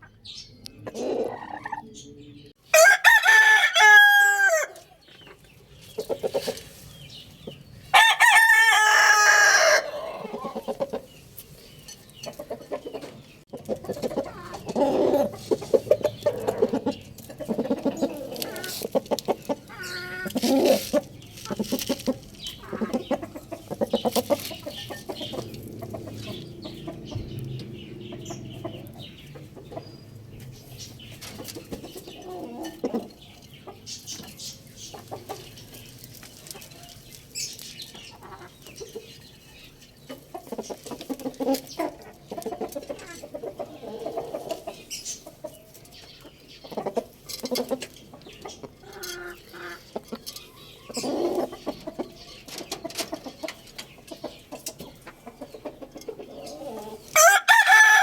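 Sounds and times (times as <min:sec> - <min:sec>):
chickens clucking: 0:00.0 - 0:58.0
rooster crowing: 0:02.7 - 0:04.8, 0:07.9 - 0:10.2, 0:57.2 - 0:58.0.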